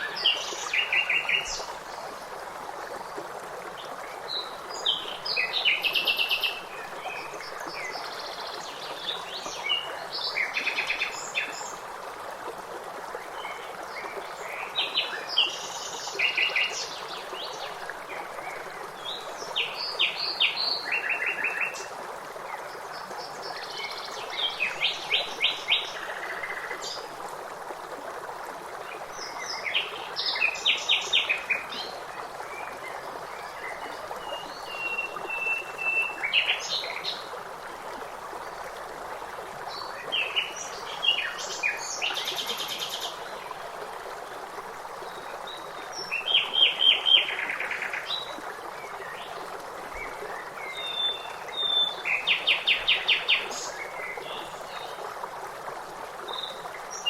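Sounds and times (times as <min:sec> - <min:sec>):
running water hiss: 0:00.0 - 0:57.0.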